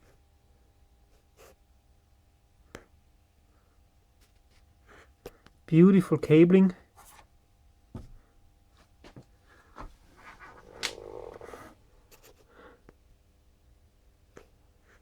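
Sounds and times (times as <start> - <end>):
faint steady hum: 0.0 - 15.0
brief rustle: 9.8 - 11.7.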